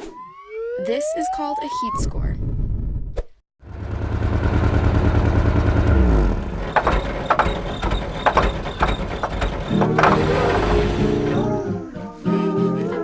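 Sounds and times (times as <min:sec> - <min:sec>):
machine motor hum: 0:03.7 - 0:11.6.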